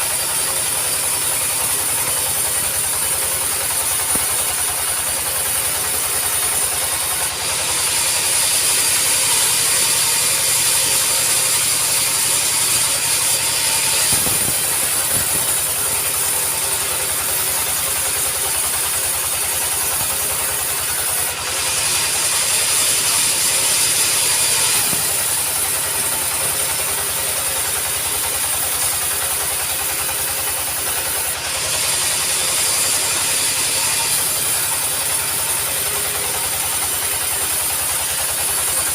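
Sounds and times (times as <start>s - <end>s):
fast rattling rhythm: 0.0s - 9.1s, 11.5s - 33.4s
harsh high hiss of sawing: 0.0s - 38.9s
sawmill machine running: 0.0s - 38.9s.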